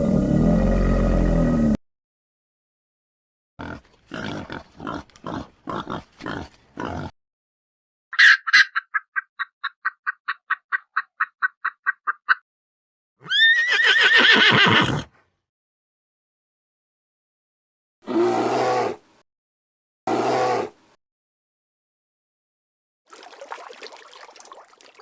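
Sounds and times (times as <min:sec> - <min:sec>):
animal short pitched pulses: 0:14.4 - 0:15.1
animal grunts: 0:14.5 - 0:15.1.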